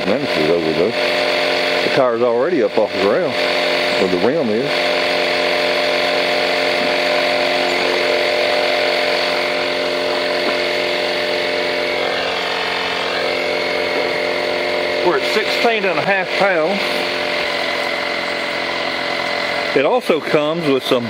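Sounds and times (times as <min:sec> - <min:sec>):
tire inflator buzzing hum: 0:00.0 - 0:21.0.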